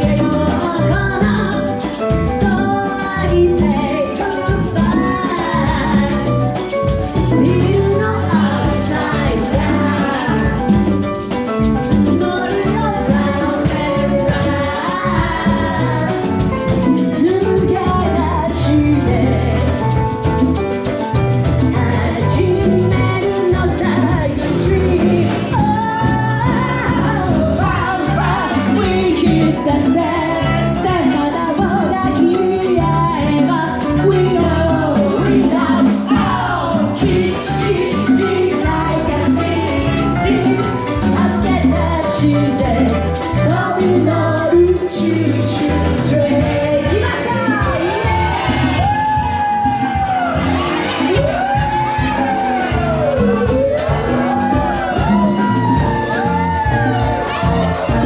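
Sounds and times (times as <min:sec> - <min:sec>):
live salsa band playing: 0:00.0 - 0:58.0
person singing: 0:21.6 - 0:58.0.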